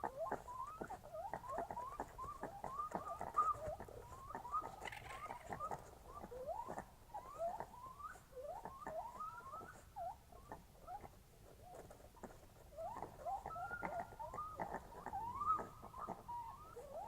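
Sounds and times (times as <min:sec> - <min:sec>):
squeaky rising calls: 0:01.8 - 0:06.7.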